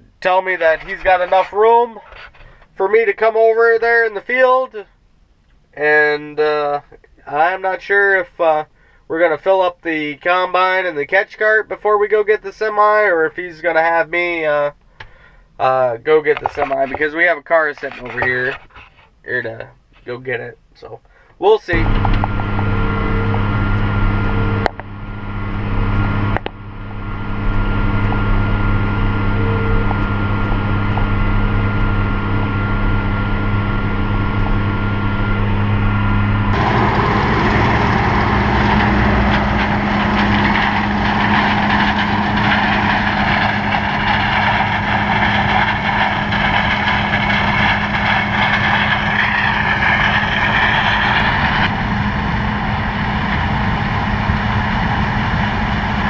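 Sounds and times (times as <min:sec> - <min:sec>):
harsh hissing machine noise: 0:21.7 - 0:24.6, 0:36.5 - 0:56.0
farm machinery engine running: 0:21.7 - 0:56.0.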